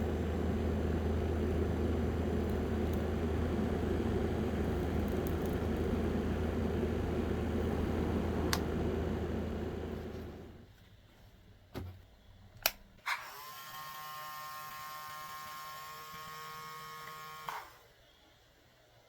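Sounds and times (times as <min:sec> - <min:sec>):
high electric motor whine: 0:00.0 - 0:10.6
small motor whirring down: 0:13.2 - 0:17.8.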